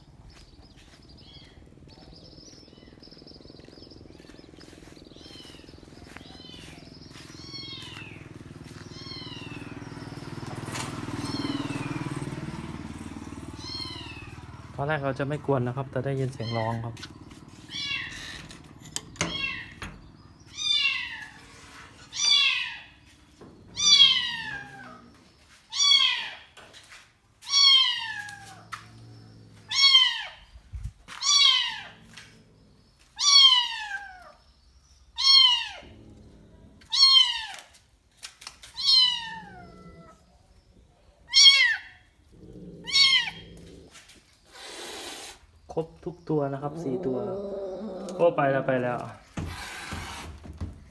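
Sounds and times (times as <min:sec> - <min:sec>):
kitten meowing: 0:08.9 - 0:09.7, 0:13.6 - 0:14.4, 0:17.6 - 0:18.4, 0:19.2 - 0:21.4, 0:23.8 - 0:25.0, 0:35.2 - 0:35.9, 0:36.9 - 0:37.6, 0:38.7 - 0:40.2, 0:42.8 - 0:43.6.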